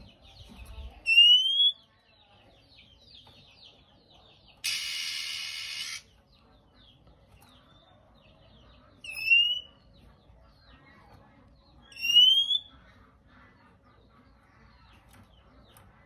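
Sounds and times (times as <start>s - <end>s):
faint bird twittering: 0.0s - 16.0s
bird rising whistled calls: 4.6s - 6.0s.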